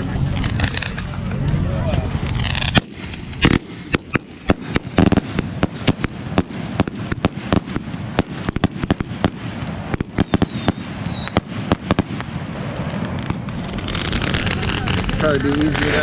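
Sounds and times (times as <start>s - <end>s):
fireworks bangs and pops: 0.1s - 1.3s, 2.2s - 16.0s
rising firework whistle: 9.4s - 15.2s.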